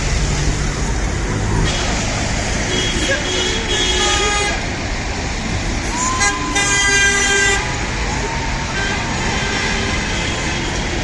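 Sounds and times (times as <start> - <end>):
street traffic noise: 0.0 - 11.0
car horns honking: 2.6 - 4.7, 6.1 - 7.8.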